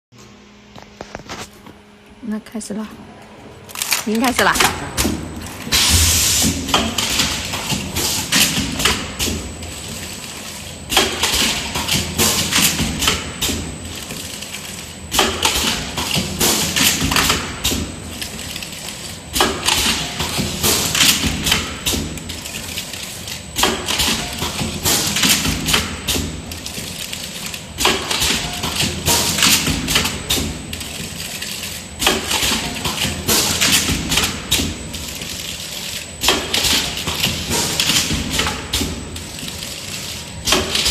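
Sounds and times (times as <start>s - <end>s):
steady mechanical hum: 0.1s - 40.9s
machine clattering knocks and thuds: 4.2s - 40.9s.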